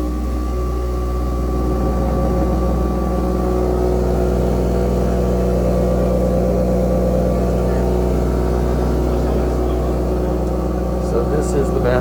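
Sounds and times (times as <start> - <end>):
deep low rumble in pipes: 0.0 - 12.0
plumbing droning hum: 0.0 - 12.0.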